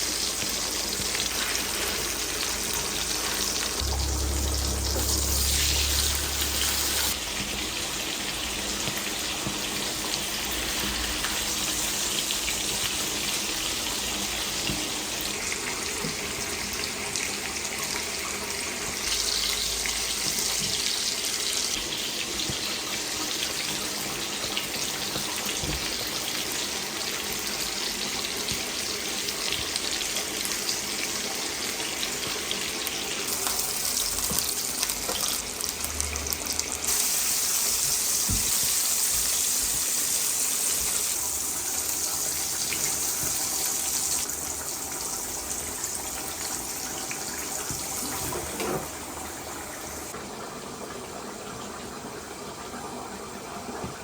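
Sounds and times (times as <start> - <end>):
tap water running into sink: 0.1 - 52.0.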